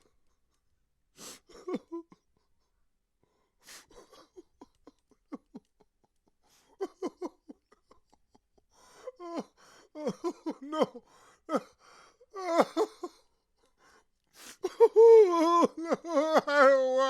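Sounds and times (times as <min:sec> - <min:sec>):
man sobbing: 0:01.2 - 0:02.5, 0:03.6 - 0:13.4, 0:14.4 - 0:17.0
man gasping breaths: 0:08.8 - 0:10.0, 0:11.0 - 0:12.2.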